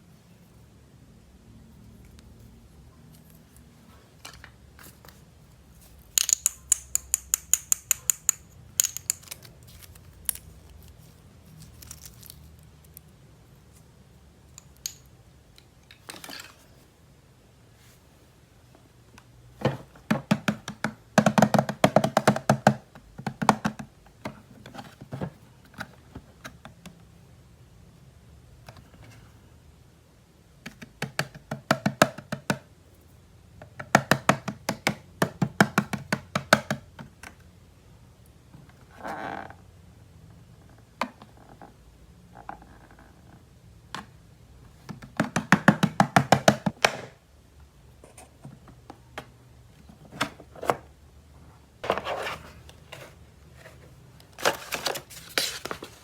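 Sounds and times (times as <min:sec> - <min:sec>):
plastic toy pieces clicking: 0:06.1 - 0:10.5.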